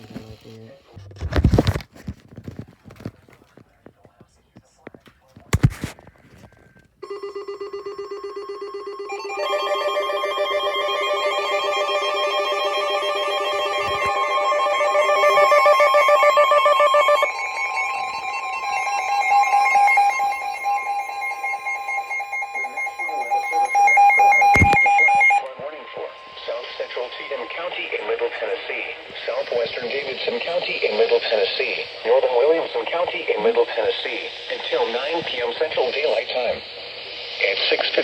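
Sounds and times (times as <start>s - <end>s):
pulsing electronic alert tones: 7.0s - 28.0s.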